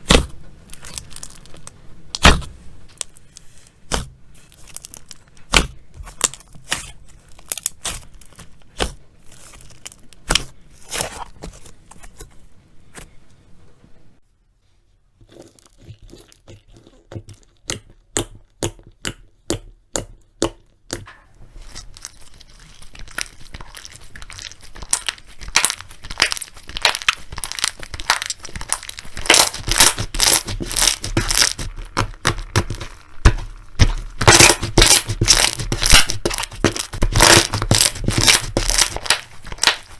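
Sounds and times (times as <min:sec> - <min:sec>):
slime crackling and popping: 0:15.2 - 0:39.9.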